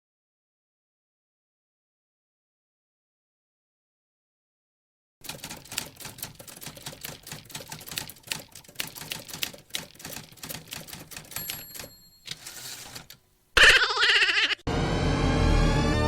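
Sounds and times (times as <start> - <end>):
typewriter keys clacking: 5.2 - 13.2
typewriter bell ding: 10.2 - 13.2.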